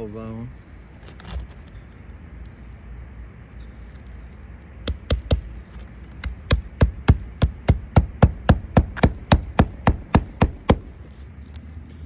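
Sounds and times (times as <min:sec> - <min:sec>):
hammer driving nails into shingles: 0:04.9 - 0:05.6, 0:06.2 - 0:11.0.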